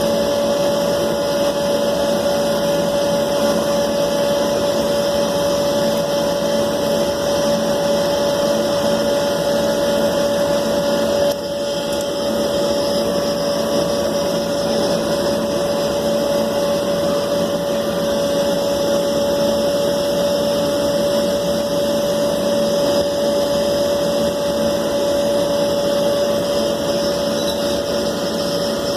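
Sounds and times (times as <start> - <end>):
electric motor whining: 0.0 - 28.9.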